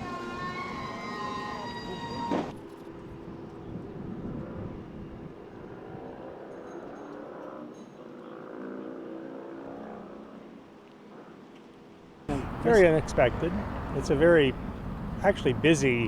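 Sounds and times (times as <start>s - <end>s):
street noise: 12.3s - 16.0s
vehicle engine running: 12.3s - 16.0s.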